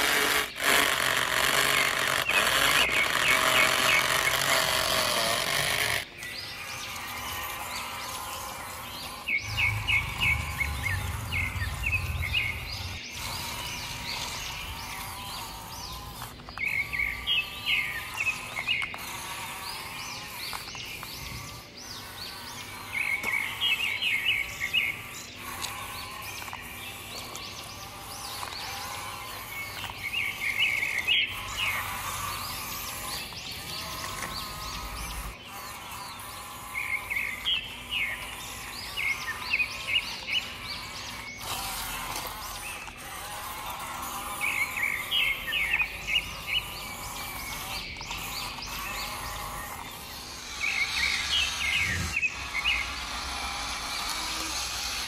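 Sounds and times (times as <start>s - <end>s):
songbird chirping: 0.0s - 54.4s
steady background noise: 0.0s - 55.0s.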